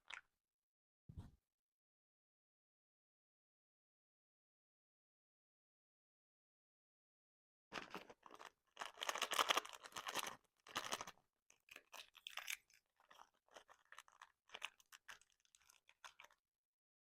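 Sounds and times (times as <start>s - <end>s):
paper bag crinkling and tearing: 7.8s - 11.1s.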